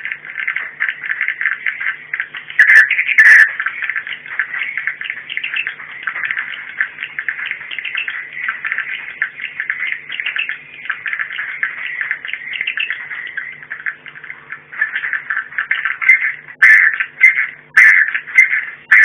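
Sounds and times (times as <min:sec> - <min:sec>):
faint steady hum: 0:00.0 - 0:19.0
swiftlets twittering: 0:00.0 - 0:19.0.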